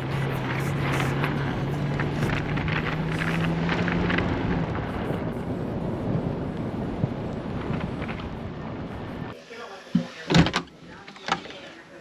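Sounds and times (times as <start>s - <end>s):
car tyres rumbling on snowy road: 0.0s - 9.4s
low hum: 0.0s - 9.4s.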